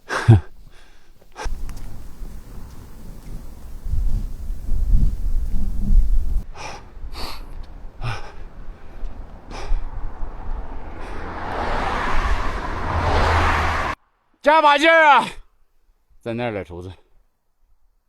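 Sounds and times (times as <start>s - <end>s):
person breathing hard: 0.0s - 11.8s
wind buffeting microphone: 0.7s - 14.0s
vehicle approaching hiss: 1.4s - 6.4s, 9.5s - 14.0s.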